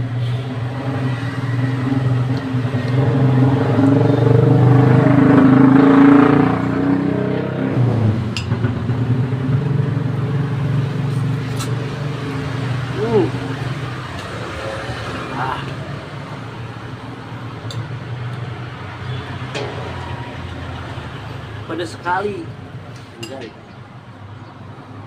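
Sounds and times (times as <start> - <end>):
vehicle engine passing by: 0.0 - 22.9
background traffic: 0.0 - 25.0.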